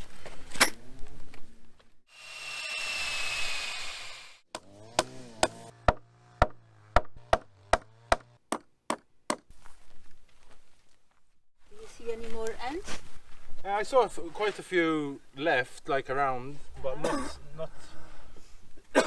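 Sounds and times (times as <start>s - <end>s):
power drill whining: 2.1s - 4.4s.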